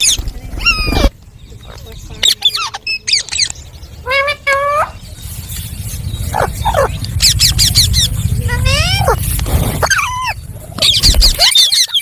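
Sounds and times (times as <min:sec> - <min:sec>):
low rumble: 0:03.5 - 0:11.6
parrot calling: 0:06.2 - 0:12.0.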